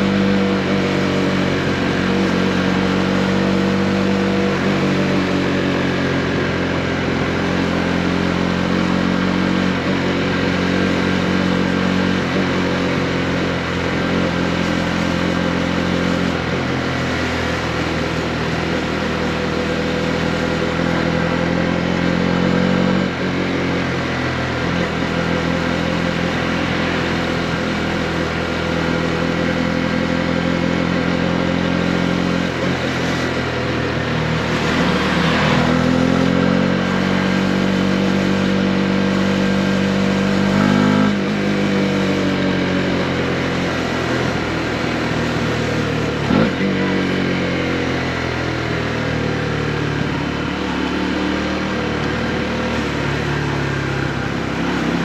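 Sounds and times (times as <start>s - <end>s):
motorcycle engine running: 0.0s - 55.0s.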